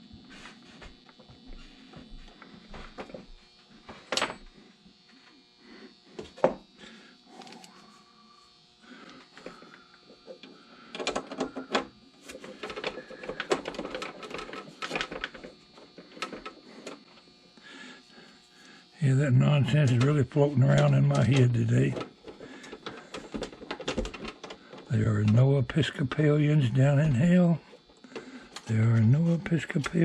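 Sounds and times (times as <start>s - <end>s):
rapid clicking and rattling: 10.4s - 17.0s, 19.9s - 25.4s.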